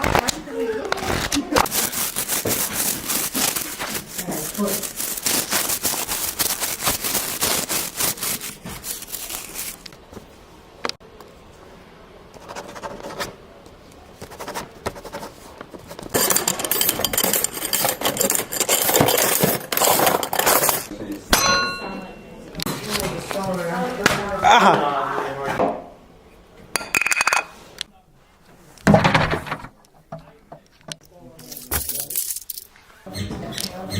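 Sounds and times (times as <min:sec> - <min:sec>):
rubbing and scraping noise: 0:01.0 - 0:10.4.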